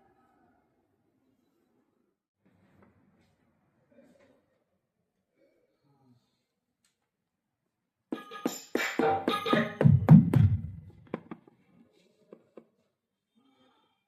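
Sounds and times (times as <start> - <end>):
electronic drum hits: 8.8 - 11.3.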